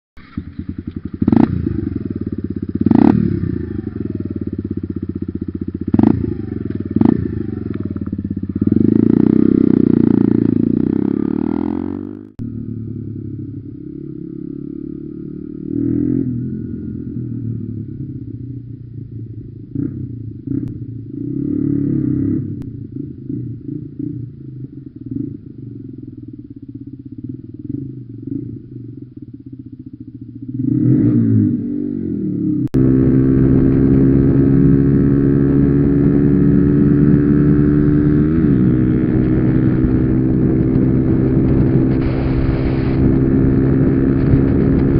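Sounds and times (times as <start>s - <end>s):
motorcycle idling with throttle blips: 0.2s - 11.3s, 22.2s - 30.8s
motorcycle engine at high revs: 0.2s - 44.9s.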